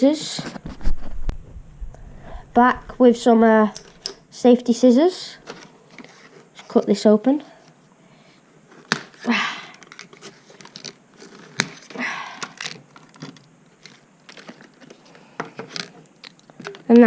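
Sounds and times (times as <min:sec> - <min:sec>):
plastic packaging crinkling: 0:09.8 - 0:17.0.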